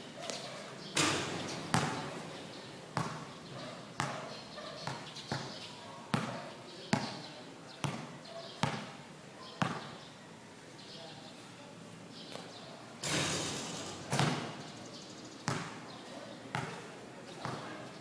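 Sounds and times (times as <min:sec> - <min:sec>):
basketball bouncing on court: 0:01.0 - 0:02.2, 0:03.0 - 0:03.3, 0:04.0 - 0:07.2, 0:07.8 - 0:09.0, 0:09.6 - 0:09.9, 0:13.0 - 0:14.6, 0:15.4 - 0:15.8, 0:16.5 - 0:16.8, 0:17.4 - 0:17.7.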